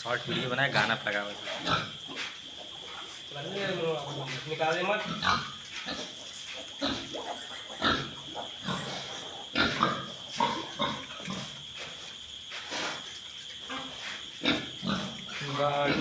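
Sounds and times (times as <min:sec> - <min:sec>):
piglets squealing and grunting: 0:05.0 - 0:11.5.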